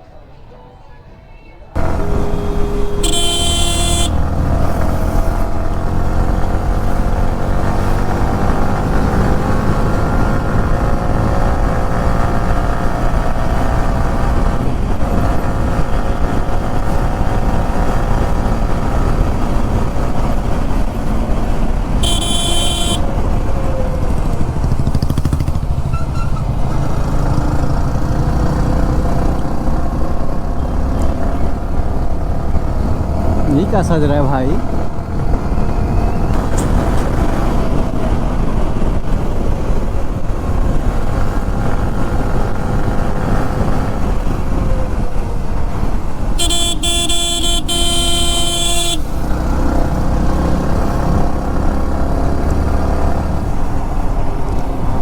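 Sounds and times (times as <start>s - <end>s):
vehicle horn: 1.8s - 4.8s, 22.0s - 23.4s, 46.4s - 49.2s
motorcycle engine running: 1.8s - 33.5s, 34.6s - 55.0s
heavy wind rumble: 4.2s - 22.1s, 23.0s - 46.4s.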